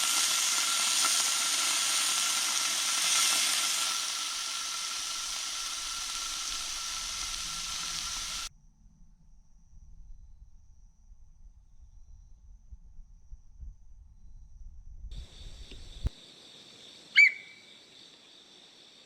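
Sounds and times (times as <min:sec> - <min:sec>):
food sizzling in a frying pan: 0:00.0 - 0:08.5.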